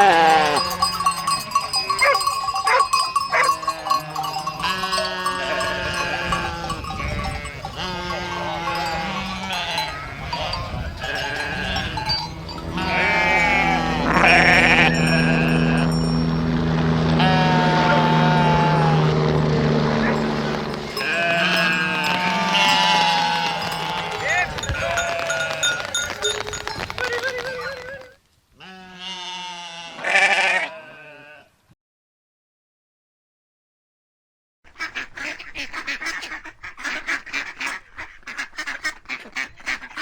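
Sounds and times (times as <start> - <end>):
sheep bleating: 0.0 - 16.2, 17.1 - 19.2, 19.9 - 28.0, 28.6 - 31.5.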